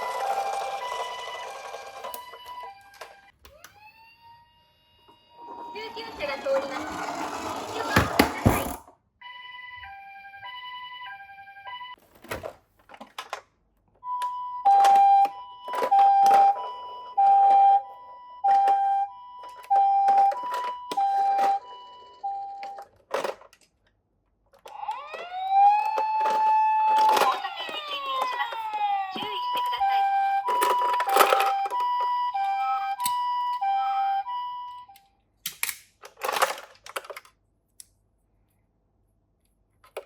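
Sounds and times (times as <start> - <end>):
toy cars knocking and clattering: 0.0 - 3.3, 5.8 - 8.9, 12.2 - 13.6, 14.7 - 17.8, 18.4 - 33.3, 35.5 - 37.4, 39.8 - 40.0
two-tone ambulance siren: 0.0 - 6.7, 9.2 - 12.0, 14.0 - 22.9, 24.7 - 35.2
wailing siren rising in pitch: 24.7 - 35.0.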